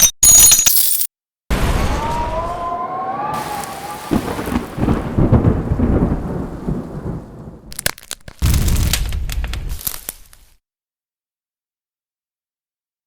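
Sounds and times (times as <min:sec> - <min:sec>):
rain-like hiss: 0:01.5 - 0:07.9
thunder rumble: 0:01.5 - 0:09.9
sharp crackles: 0:01.5 - 0:10.6.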